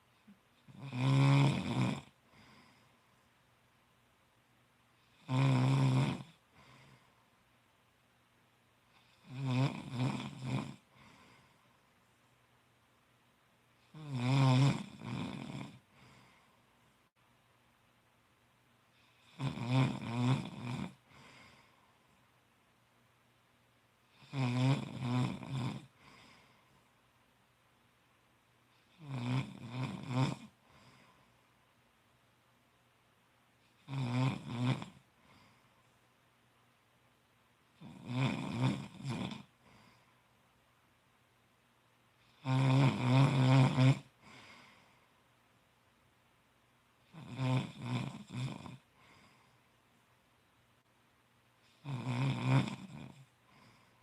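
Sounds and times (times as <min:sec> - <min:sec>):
man snoring loudly: 0:00.7 - 0:02.2, 0:05.1 - 0:06.4, 0:09.0 - 0:10.9, 0:13.9 - 0:15.8, 0:19.2 - 0:21.0, 0:24.1 - 0:25.9, 0:28.9 - 0:30.6, 0:33.8 - 0:35.0, 0:37.8 - 0:39.5, 0:42.3 - 0:44.2, 0:47.1 - 0:48.9, 0:51.8 - 0:53.8
faint breath out: 0:10.9 - 0:11.8, 0:44.2 - 0:45.2.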